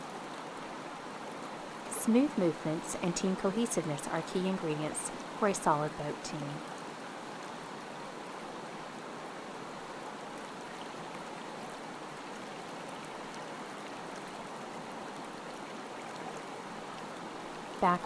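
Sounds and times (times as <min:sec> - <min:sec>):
river water rushing: 0:00.1 - 0:18.0.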